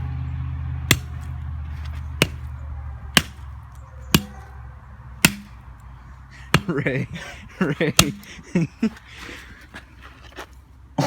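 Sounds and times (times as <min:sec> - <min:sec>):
bat striking phone: 0:00.9 - 0:02.5, 0:03.2 - 0:03.5, 0:04.1 - 0:04.5, 0:05.2 - 0:05.6, 0:06.5 - 0:06.9, 0:07.9 - 0:08.3.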